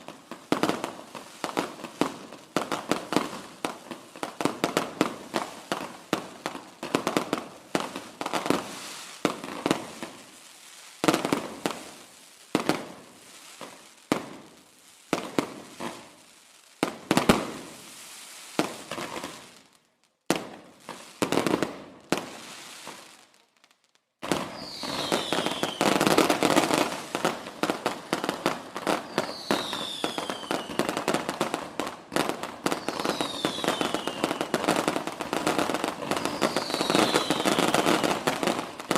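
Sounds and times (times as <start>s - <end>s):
fireworks bangs: 0.0s - 19.6s, 20.3s - 23.3s, 24.2s - 38.9s
fireworks crackling: 0.0s - 38.9s
falling firework whistles: 8.2s - 12.0s, 24.3s - 38.9s.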